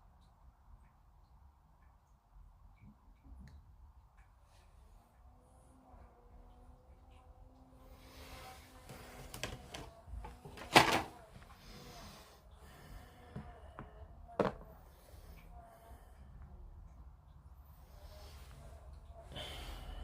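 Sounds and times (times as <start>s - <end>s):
plastic parts clicking and tapping: 9.2s - 11.2s.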